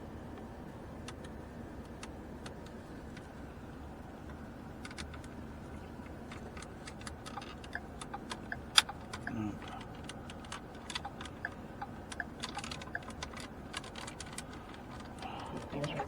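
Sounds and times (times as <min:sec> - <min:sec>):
low background hum: 0:00.0 - 0:16.0
small clicks of plastic parts: 0:06.0 - 0:16.0.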